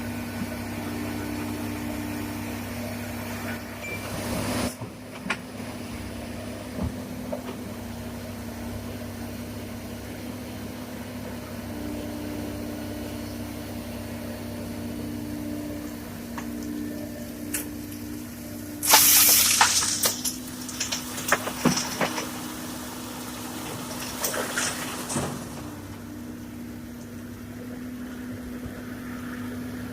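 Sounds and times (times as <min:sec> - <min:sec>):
excavator diesel engine running: 0:00.0 - 0:29.9
stones clattering: 0:18.8 - 0:22.5
rock pouring from bucket: 0:18.8 - 0:25.7.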